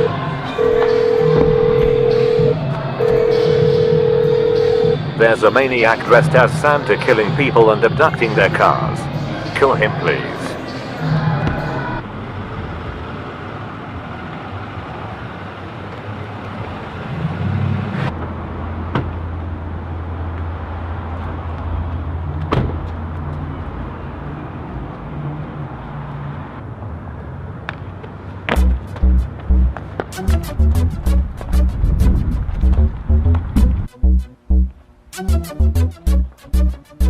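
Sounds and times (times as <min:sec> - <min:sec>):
car engine humming: 0:00.0 - 0:06.8.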